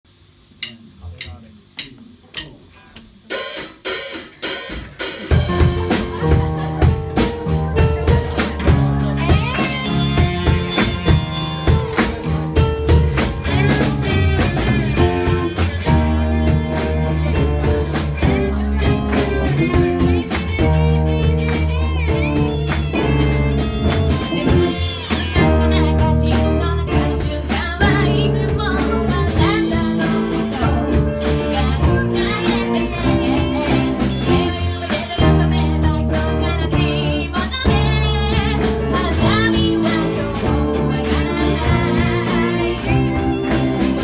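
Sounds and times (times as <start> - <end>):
bass guitar: 0.5 - 44.0
count-in clicks: 0.6 - 3.1
live band playing: 3.2 - 44.0.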